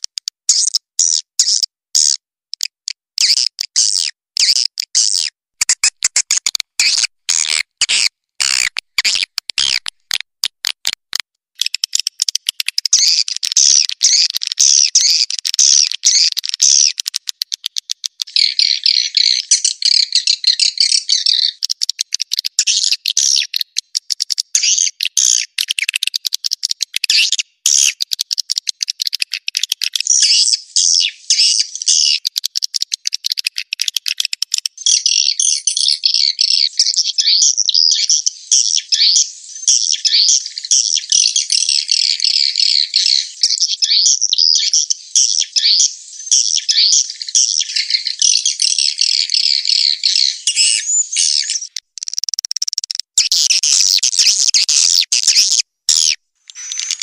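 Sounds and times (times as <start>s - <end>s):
bird dry clicks: 0.0s - 0.8s, 1.5s - 18.7s, 21.5s - 30.4s, 31.4s - 35.3s, 50.5s - 57.0s
high twittering bird chirps: 3.2s - 10.2s, 11.6s - 57.0s.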